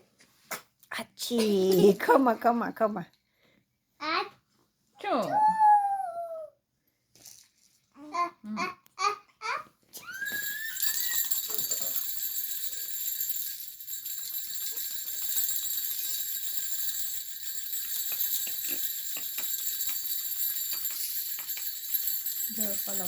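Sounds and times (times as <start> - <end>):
jingle-bell rattle shaken: 7.2 - 7.8, 10.2 - 23.0.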